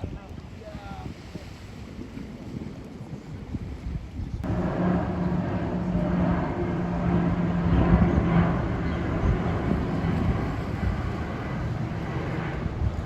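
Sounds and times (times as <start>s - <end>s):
airplane passing overhead: 4.4s - 13.0s.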